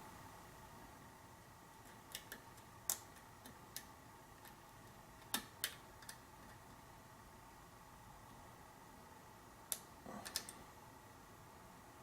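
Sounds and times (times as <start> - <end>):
lock pick clicking on pins: 1.8 - 4.6, 5.2 - 6.6.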